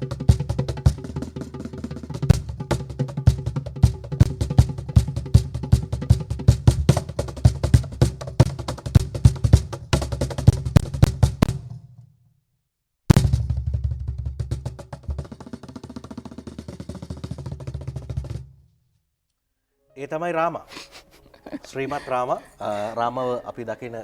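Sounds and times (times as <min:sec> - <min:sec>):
loud drum hit: 0:13.1 - 0:15.5.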